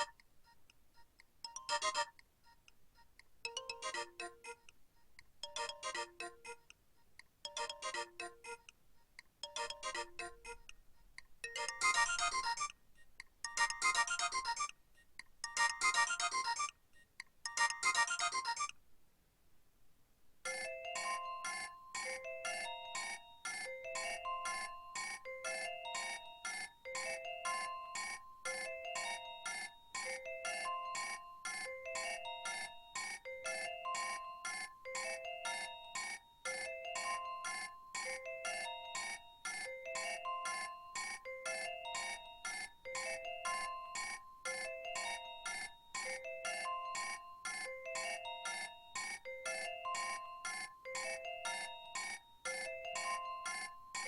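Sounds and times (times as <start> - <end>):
electronic ringtone beeps: 1.4 - 2.2, 3.5 - 4.4, 5.4 - 6.4, 7.4 - 8.4, 9.4 - 10.4, 11.4 - 14.7, 20.5 - 54.0.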